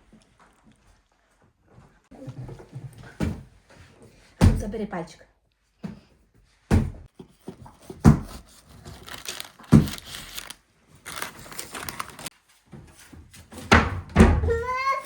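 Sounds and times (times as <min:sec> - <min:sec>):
crinkling and rustling: 0:00.0 - 0:03.2, 0:07.3 - 0:13.7.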